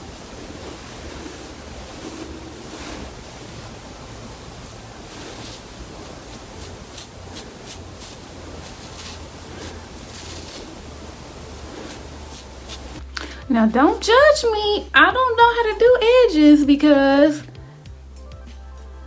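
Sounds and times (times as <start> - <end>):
brush scratching through hair: 0.0 - 14.6
steady hiss: 0.0 - 19.0.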